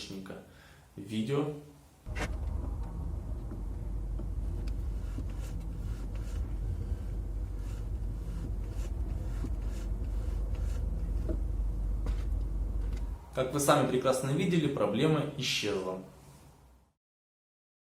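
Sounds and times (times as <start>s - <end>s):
car engine idling: 2.1s - 13.2s.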